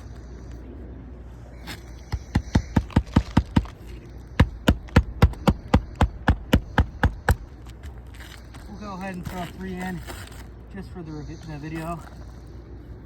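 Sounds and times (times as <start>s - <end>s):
hammer striking nail: 4.4s - 7.4s.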